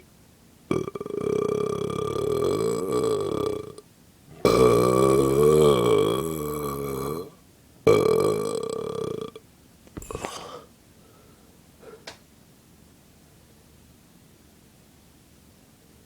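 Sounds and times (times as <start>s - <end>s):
person burping: 0.7s - 9.4s, 10.0s - 10.6s.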